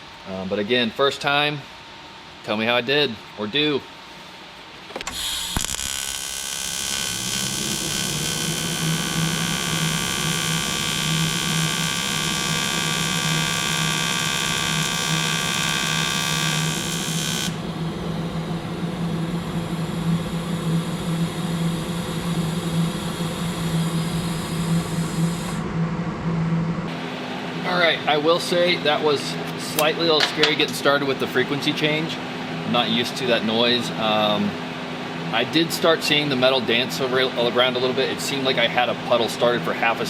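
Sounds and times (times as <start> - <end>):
welder buzzing: 4.9 - 25.7
welding arc hiss: 5.0 - 17.6, 18.2 - 25.6.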